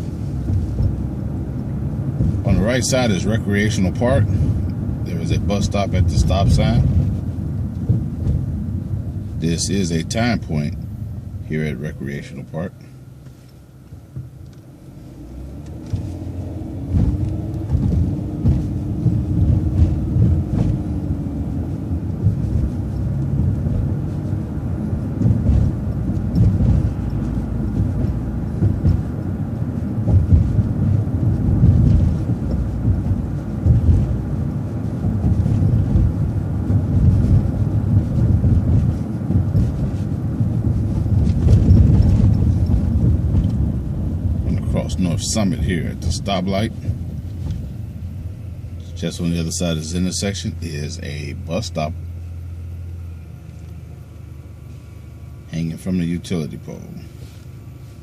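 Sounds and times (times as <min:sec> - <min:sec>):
bus engine and road rumble: 0:00.0 - 0:58.0
bus whine rising in pitch: 0:14.4 - 0:44.5.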